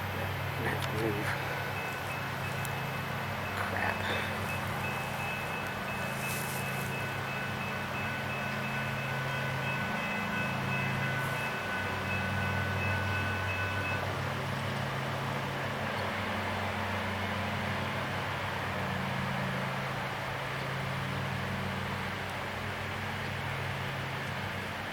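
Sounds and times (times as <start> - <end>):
engine idling: 0.0 - 13.4
faint high whine: 0.0 - 14.9.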